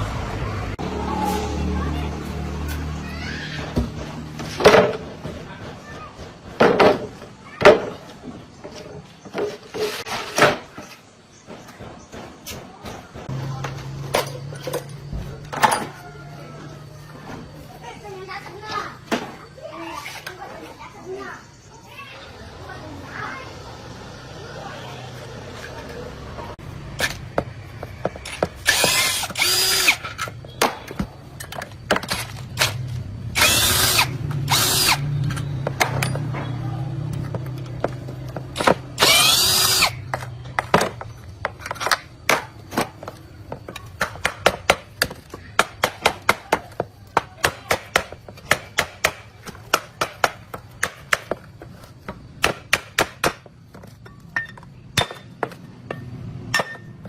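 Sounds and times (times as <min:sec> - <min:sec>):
power tool whining: 0:28.6 - 0:30.3, 0:33.3 - 0:35.4, 0:39.0 - 0:40.0.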